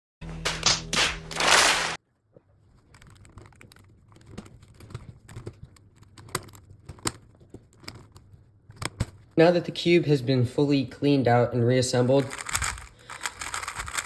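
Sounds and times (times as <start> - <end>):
plastic puzzle cube clicking: 2.8 - 9.3, 12.2 - 14.0.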